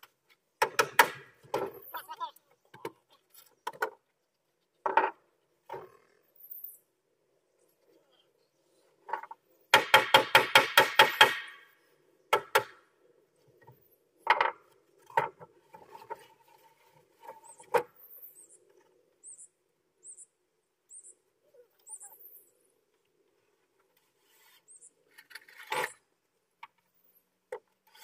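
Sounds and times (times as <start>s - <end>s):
hammer striking wood: 0.6s - 1.6s, 9.7s - 11.6s, 12.3s - 12.8s.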